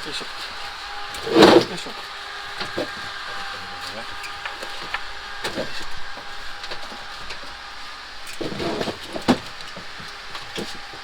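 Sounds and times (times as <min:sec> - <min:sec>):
scrape: 0:01.2 - 0:02.0, 0:08.3 - 0:09.5.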